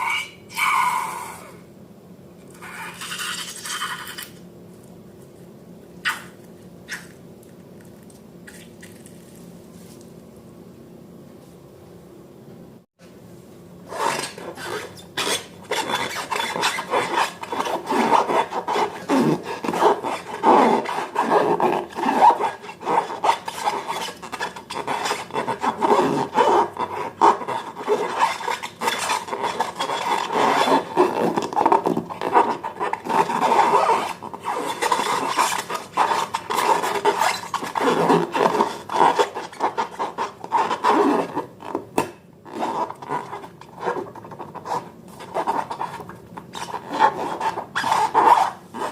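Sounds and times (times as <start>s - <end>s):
slime rubbing and scraping: 13.9s - 41.9s, 42.5s - 48.9s.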